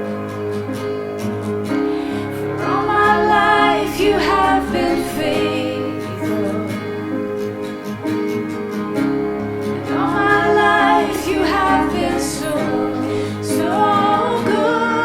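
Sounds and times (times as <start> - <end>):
person singing: 0.0 - 8.0, 9.8 - 15.0
acoustic guitar: 0.0 - 15.0.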